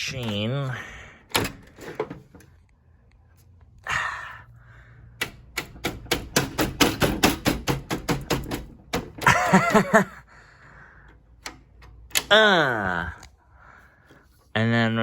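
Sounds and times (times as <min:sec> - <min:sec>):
person humming: 0:12.3 - 0:13.3.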